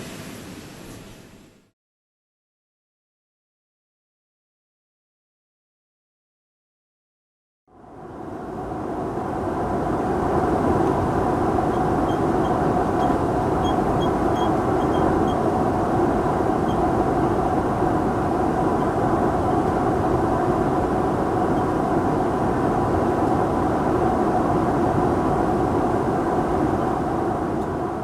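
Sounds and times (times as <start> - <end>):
faint hum: 7.7 - 28.0
jet engines and rushing air: 7.8 - 28.0.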